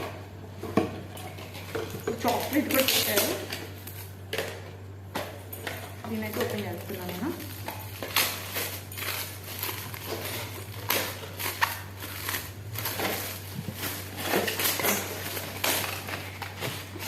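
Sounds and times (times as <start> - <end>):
gift wrapping tearing and crumpling: 6.7 - 17.0.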